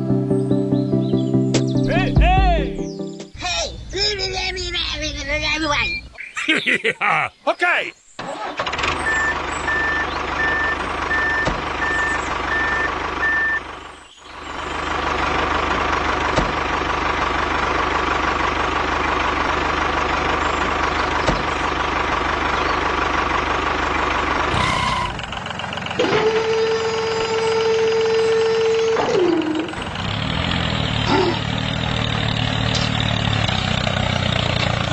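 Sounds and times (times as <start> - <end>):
engine running: 8.2 - 34.9
reversing alarm beeping: 9.0 - 13.7.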